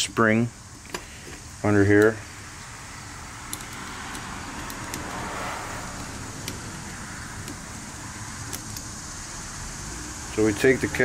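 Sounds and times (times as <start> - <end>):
faint clicks of small metal parts: 3.5 - 5.3, 5.9 - 8.9.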